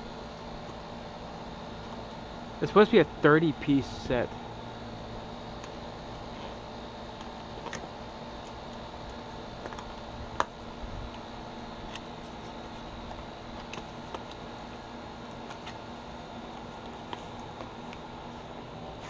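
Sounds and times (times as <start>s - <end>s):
steady background hum: 0.0s - 19.0s.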